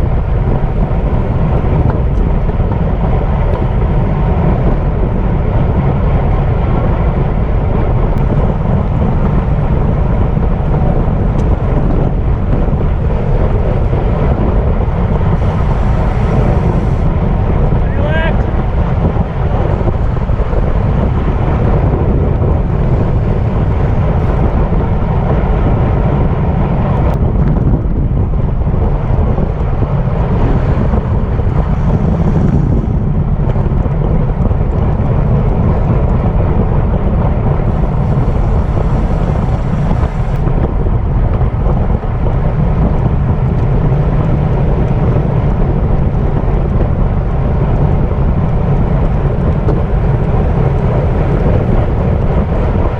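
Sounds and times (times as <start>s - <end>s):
wind rushing over microphone: 0.0s - 52.9s.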